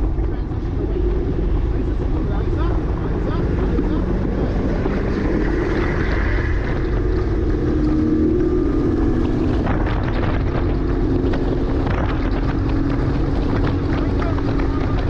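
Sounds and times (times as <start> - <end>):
car engine running hard: 0.0 - 15.0
wind and road noise: 0.0 - 15.0.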